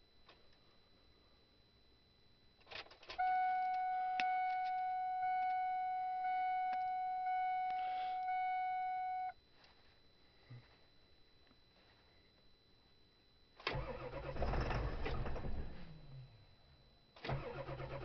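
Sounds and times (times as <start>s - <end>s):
dashboard warning tone: 3.2s - 9.3s.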